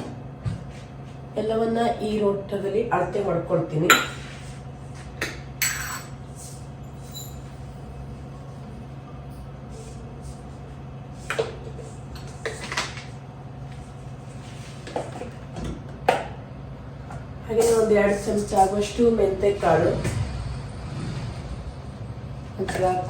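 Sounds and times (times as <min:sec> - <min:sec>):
kitchen utensils clinking: 0:05.6 - 0:06.2.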